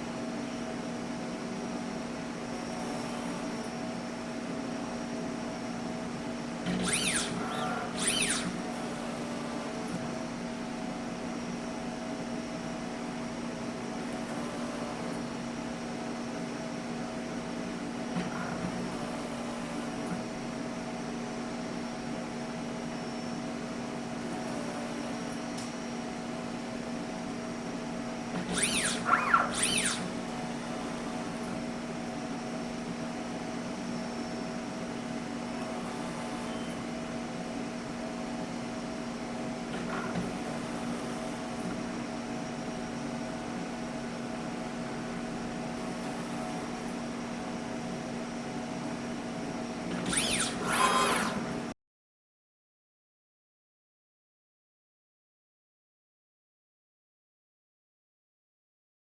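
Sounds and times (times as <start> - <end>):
machine hum: 0.0 - 11.1, 27.2 - 43.2, 47.8 - 51.8
high-pitched sweeping whirring: 6.7 - 8.7, 28.4 - 30.3, 49.9 - 51.6.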